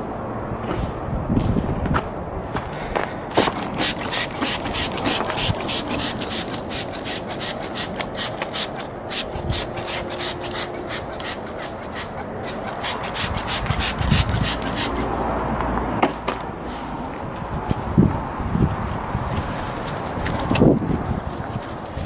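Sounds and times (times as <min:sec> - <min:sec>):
cloth rubbing car surface: 0:03.4 - 0:15.1.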